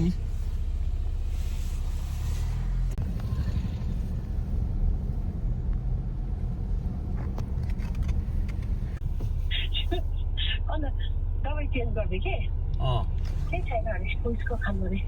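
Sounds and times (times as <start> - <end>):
car engine and road noise: 0.0 - 15.0.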